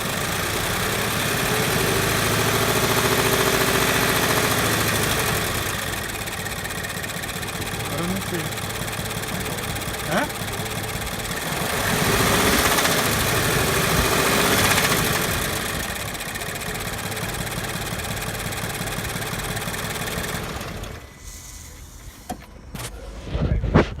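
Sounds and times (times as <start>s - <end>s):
car engine running: 0.0s - 24.0s.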